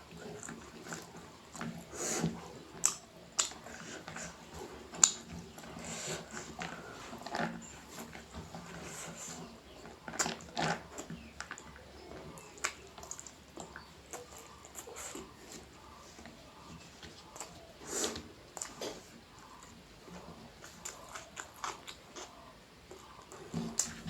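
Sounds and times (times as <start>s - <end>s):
chewing and wet mouth smacks: 0.2s - 8.1s, 12.4s - 15.3s, 17.3s - 19.8s, 20.6s - 24.0s.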